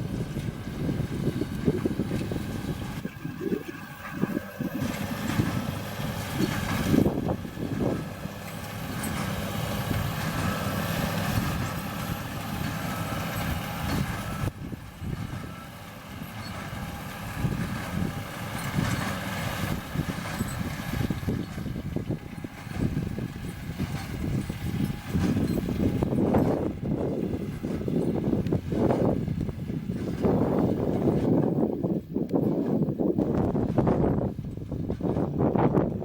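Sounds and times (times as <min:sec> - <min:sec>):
tractor diesel engine running: 0:00.0 - 0:36.0.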